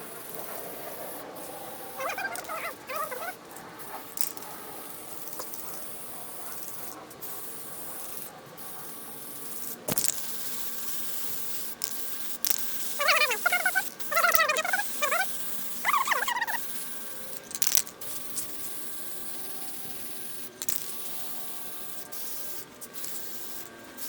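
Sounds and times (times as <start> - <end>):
aerosol spray hissing: 0.0 - 17.4, 18.0 - 24.0
squeaky pitched chirps: 1.5 - 4.2, 12.9 - 16.8.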